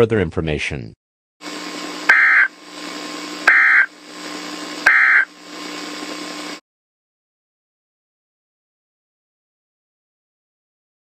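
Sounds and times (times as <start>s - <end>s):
static hiss: 1.5s - 6.6s
buzzy digital tone squawks: 2.1s - 2.5s, 3.5s - 3.9s, 4.8s - 5.3s.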